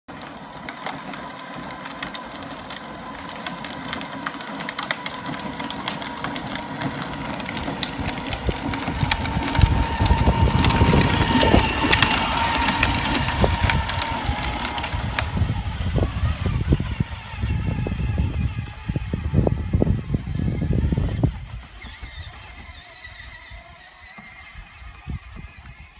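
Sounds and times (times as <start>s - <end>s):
electric motor whine: 0.1s - 25.9s
plastic wheels crunching: 0.1s - 25.9s.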